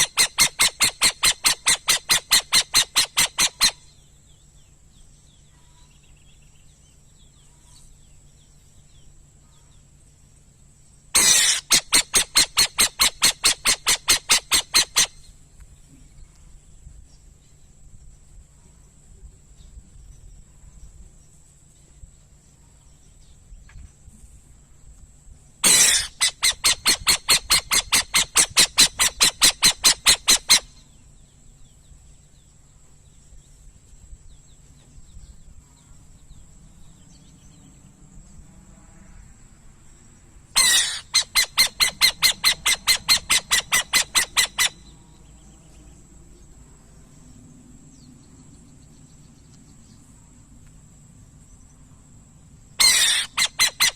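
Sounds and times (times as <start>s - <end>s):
owl screeching and rasping: 0.0s - 3.9s, 11.2s - 15.3s, 25.6s - 30.8s, 40.6s - 45.0s, 52.8s - 53.9s.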